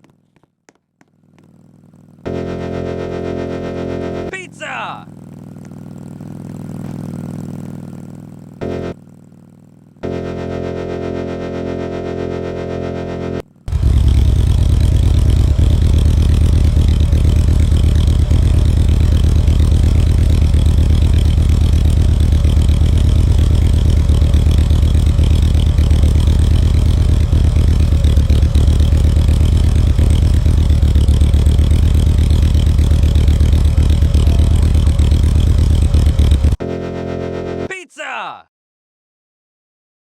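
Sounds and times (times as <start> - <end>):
distorted electronic hum: 2.3 - 4.5, 8.6 - 9.0, 10.0 - 37.7.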